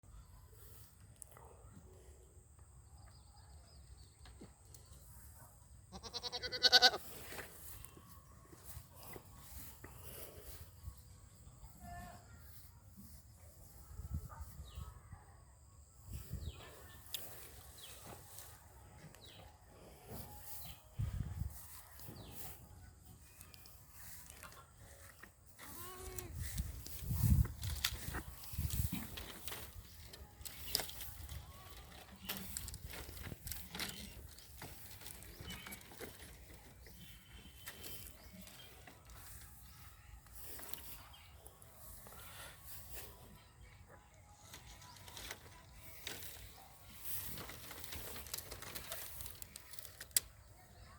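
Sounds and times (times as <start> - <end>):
goats shuffling: 6.7 - 10.8, 16.6 - 43.3, 44.4 - 50.5.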